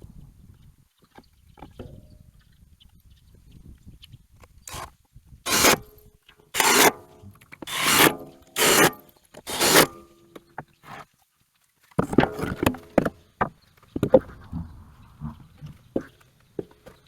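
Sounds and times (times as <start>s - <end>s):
hand tool rasping across wood: 4.7s - 4.9s, 5.5s - 5.9s, 6.6s - 10.1s.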